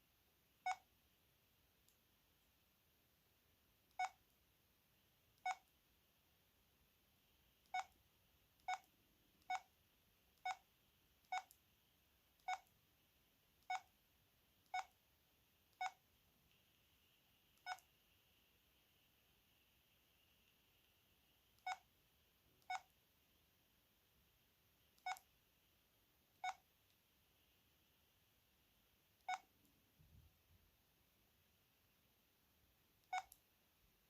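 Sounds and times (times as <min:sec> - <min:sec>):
phone keypad beeping: 0:00.6 - 0:00.9, 0:04.0 - 0:04.2, 0:08.6 - 0:08.9, 0:11.3 - 0:11.6, 0:12.4 - 0:12.7, 0:14.7 - 0:14.9, 0:17.6 - 0:17.9, 0:21.6 - 0:21.9, 0:25.0 - 0:25.3, 0:26.4 - 0:26.6, 0:29.2 - 0:29.5, 0:33.0 - 0:33.4.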